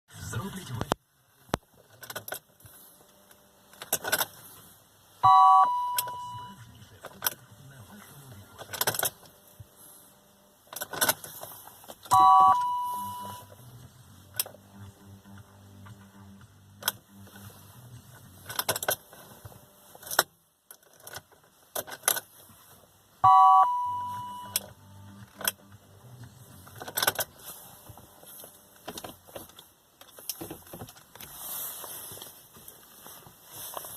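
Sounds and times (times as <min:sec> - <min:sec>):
electronic dashboard chime: 0:05.2 - 0:06.6, 0:12.1 - 0:13.5, 0:23.2 - 0:25.0.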